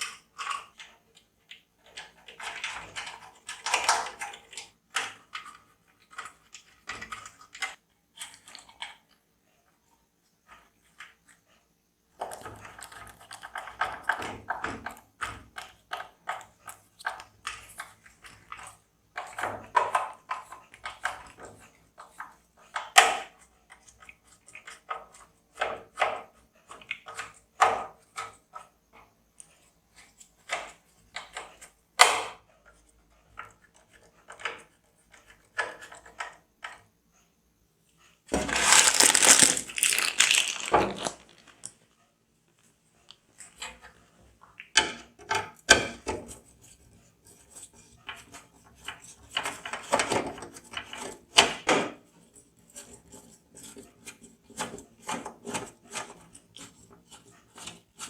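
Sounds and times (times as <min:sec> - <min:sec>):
packaging rustling: 0:38.3 - 0:41.8.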